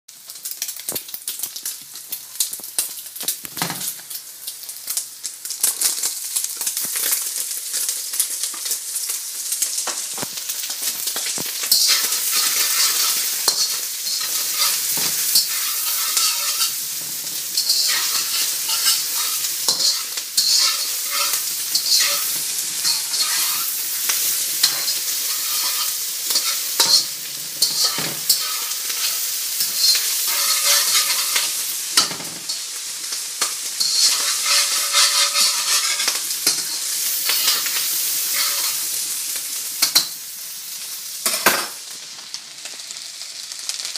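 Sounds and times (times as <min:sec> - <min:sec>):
rice sizzling in a hot pan: 0:00.1 - 0:43.9
utensil scraping a pan: 0:11.6 - 0:32.6, 0:33.8 - 0:38.9.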